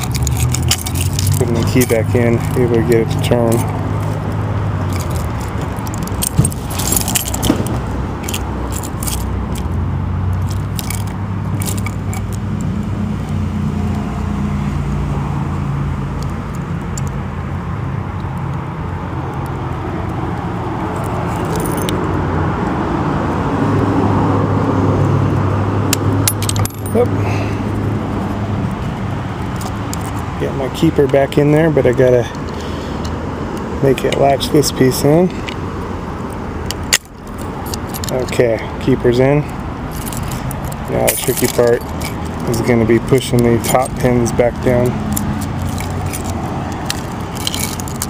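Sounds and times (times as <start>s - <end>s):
key and lock clicking and jingling: 0.0s - 14.0s, 21.0s - 22.0s, 25.9s - 27.5s, 28.2s - 32.6s, 36.2s - 48.0s
low traffic hum: 0.0s - 48.0s.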